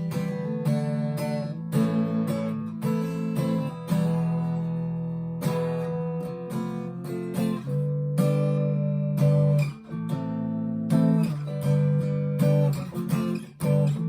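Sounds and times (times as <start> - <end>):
electric guitar strumming chords: 0.0 - 14.0.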